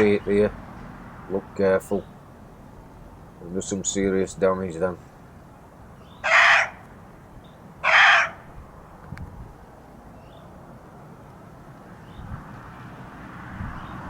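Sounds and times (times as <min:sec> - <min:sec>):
deer barking: 0:06.2 - 0:06.9, 0:07.8 - 0:08.4.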